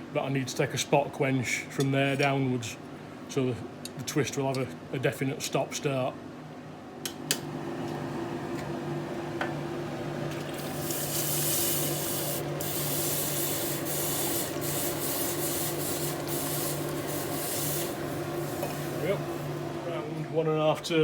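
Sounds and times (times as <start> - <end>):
blower motor hum: 7.4 - 21.0.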